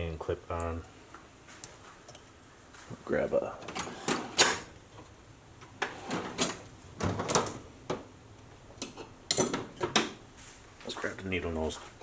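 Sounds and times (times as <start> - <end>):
metal tools clinking on a workbench: 8.8 - 10.2.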